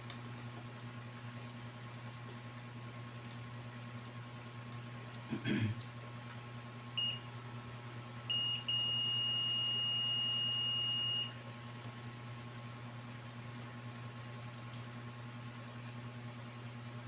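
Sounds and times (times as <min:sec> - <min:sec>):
multimeter continuity beeps: 0:07.0 - 0:07.3, 0:08.2 - 0:11.4.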